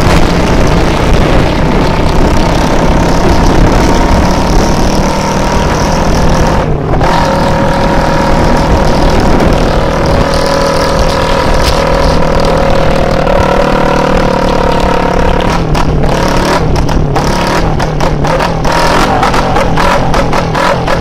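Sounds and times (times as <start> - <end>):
motorcycle engine through straight pipe: 0.0 - 21.0.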